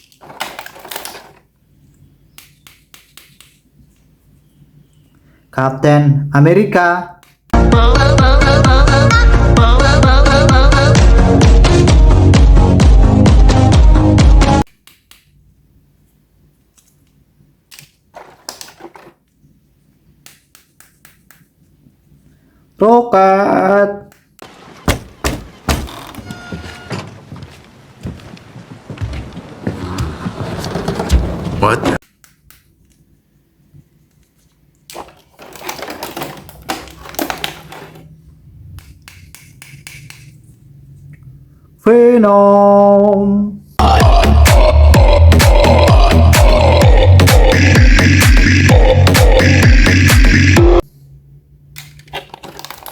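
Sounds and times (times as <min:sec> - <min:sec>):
hard plastic clattering: 0:00.0 - 0:01.5, 0:18.2 - 0:19.2, 0:34.9 - 0:38.1
toys rustling: 0:00.0 - 0:01.6, 0:17.8 - 0:19.5, 0:33.9 - 0:38.3, 0:51.8 - 0:52.9
sharp plastic clicks: 0:02.4 - 0:03.7
electronic dance music: 0:07.6 - 0:14.6, 0:43.8 - 0:50.8.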